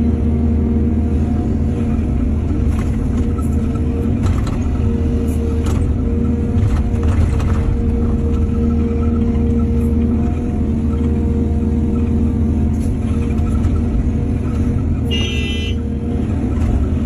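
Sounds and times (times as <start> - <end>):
diesel engine rumbling: 0.0 - 17.0
clanks and rattles: 2.4 - 11.2, 12.7 - 15.0.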